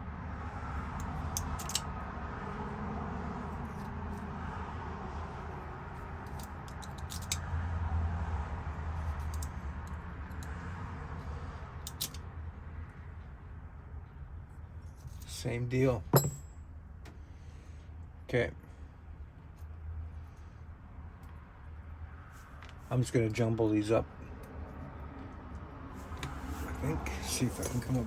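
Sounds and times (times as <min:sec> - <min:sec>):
metallic clicks of keys and lock parts: 0:01.0 - 0:01.9, 0:06.3 - 0:07.4, 0:09.2 - 0:10.5, 0:11.8 - 0:12.2.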